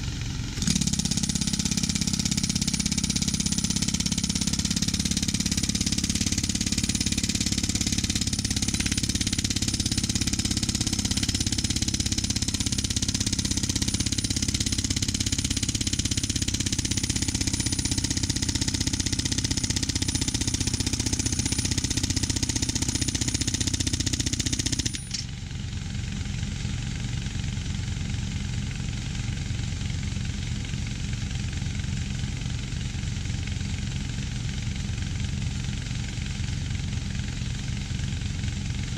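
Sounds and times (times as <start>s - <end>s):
engine running: 0.0s - 25.4s.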